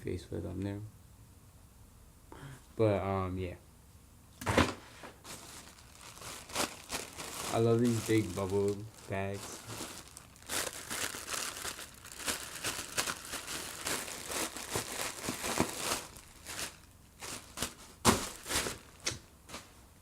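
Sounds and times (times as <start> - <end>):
bubble wrap crinkling: 5.2 - 19.8.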